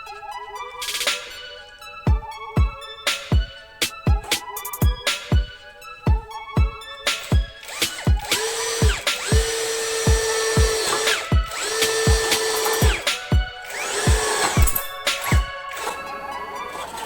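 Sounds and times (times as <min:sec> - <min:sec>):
background music with steady beat: 0:00.0 - 0:17.0
cordless drill motor whirring: 0:07.6 - 0:17.0.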